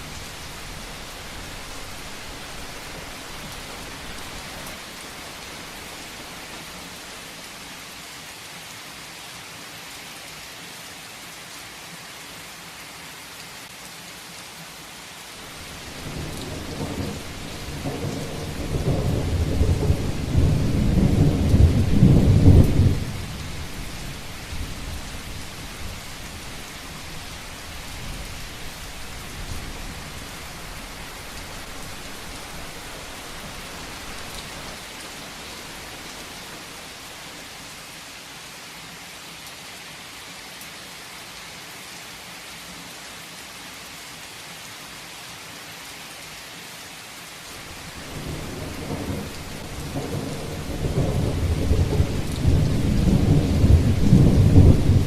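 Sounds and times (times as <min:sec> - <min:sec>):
heavy rain: 0:00.0 - 0:55.0
rolling thunder: 0:15.5 - 0:26.5, 0:47.7 - 0:55.0.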